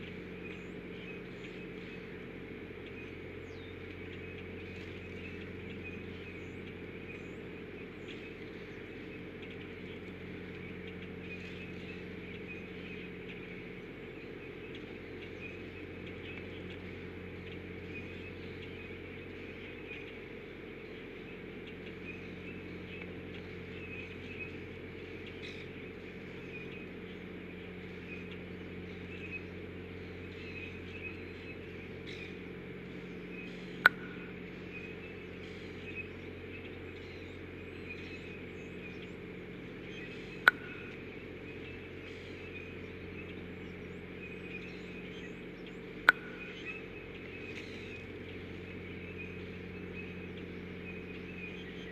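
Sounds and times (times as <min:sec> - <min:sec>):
steady low hum: 0:00.0 - 0:51.9
faint high chirping: 0:00.3 - 0:51.9
sharp click: 0:40.4 - 0:40.8.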